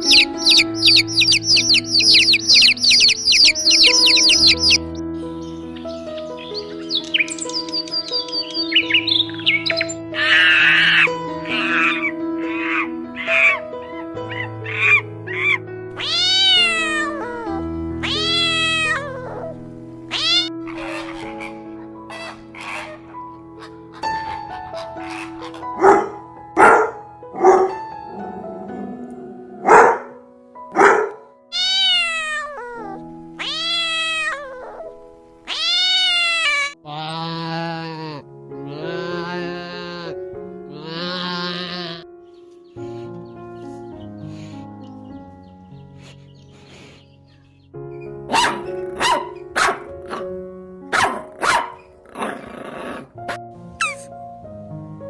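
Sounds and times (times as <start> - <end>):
cat meowing: 0.0 - 4.9, 10.2 - 13.6, 14.6 - 21.4, 31.5 - 40.1
sharp animal calls: 0.0 - 5.0, 6.4 - 17.2, 20.1 - 26.2, 35.5 - 37.3, 53.3 - 54.1
soft background music: 0.0 - 55.0
dog barking: 22.2 - 27.8, 29.6 - 31.3, 48.3 - 50.3, 50.9 - 51.9.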